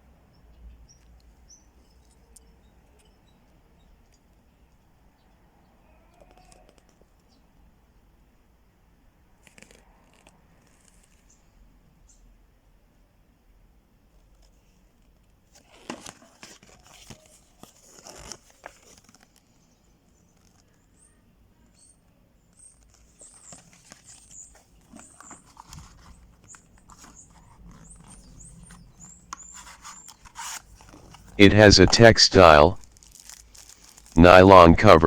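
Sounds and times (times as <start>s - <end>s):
packaging crinkling and rustling: 15.6s - 19.6s, 22.7s - 31.4s, 32.8s - 34.2s.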